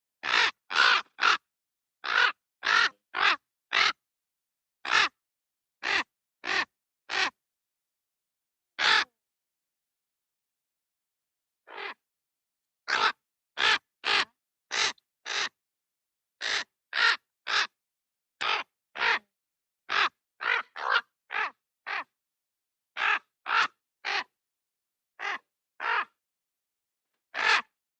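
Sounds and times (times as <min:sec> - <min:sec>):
raven cawing: 0:00.2 - 0:04.0, 0:04.8 - 0:05.2, 0:05.8 - 0:07.4, 0:08.8 - 0:09.1, 0:11.7 - 0:12.0, 0:12.9 - 0:15.6, 0:16.4 - 0:17.8, 0:18.4 - 0:19.2, 0:19.9 - 0:22.1, 0:23.0 - 0:24.3, 0:25.2 - 0:26.2, 0:27.3 - 0:27.8.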